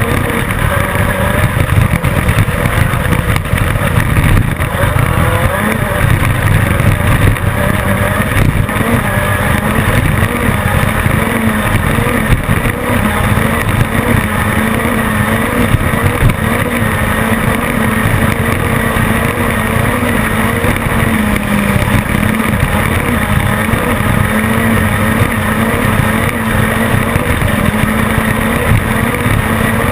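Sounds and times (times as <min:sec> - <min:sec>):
low uneven rumble: 0:00.0 - 0:29.9
race car engine at high revs: 0:00.0 - 0:29.9.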